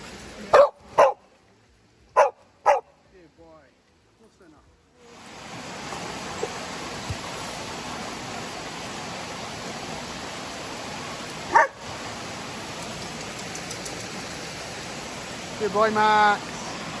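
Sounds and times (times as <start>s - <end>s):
dog barking: 0.5s - 1.2s, 2.2s - 2.9s, 11.5s - 11.8s.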